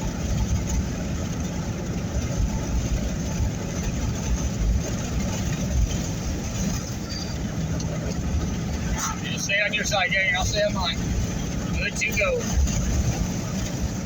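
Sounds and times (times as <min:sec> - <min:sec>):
road noise: 0:00.0 - 0:14.0
vehicle engine rumble: 0:00.0 - 0:14.0
wind against vehicle body: 0:00.0 - 0:14.0.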